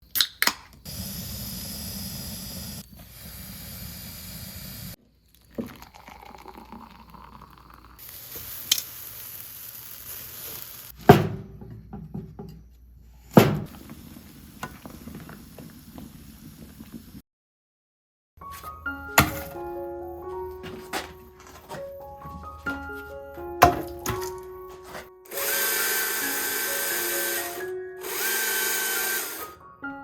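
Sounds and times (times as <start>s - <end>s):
hissing and sizzling noise: 7.6s - 11.0s, 13.7s - 17.2s.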